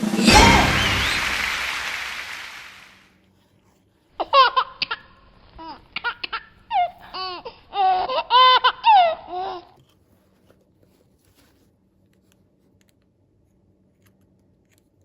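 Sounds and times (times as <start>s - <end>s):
crash: 0.0s - 2.9s.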